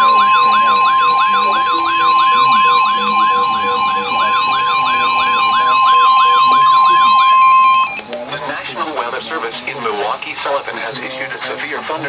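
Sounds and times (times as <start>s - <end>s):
fast warbling siren: 0.0s - 8.1s
low intermittent beeping: 0.0s - 8.1s
steady warning alarm tone: 0.0s - 11.5s.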